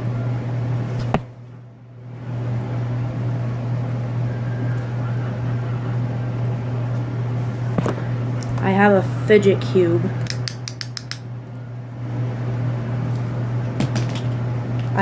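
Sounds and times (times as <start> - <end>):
steady low hum: 0.0 - 15.0
sharp click: 10.2 - 11.2.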